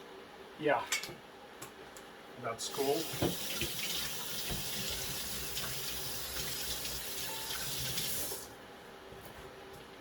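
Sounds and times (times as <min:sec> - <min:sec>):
tap water running into sink: 0:02.9 - 0:08.5.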